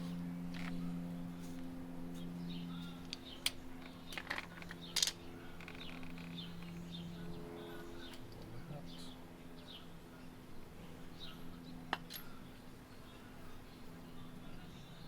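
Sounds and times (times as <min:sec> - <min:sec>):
steady low hum: 0:00.0 - 0:15.0
small birds chirping: 0:00.5 - 0:15.0.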